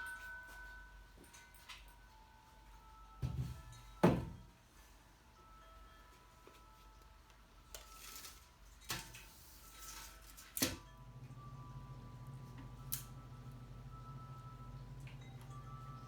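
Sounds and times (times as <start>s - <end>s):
low steady hum: 10.4s - 16.0s.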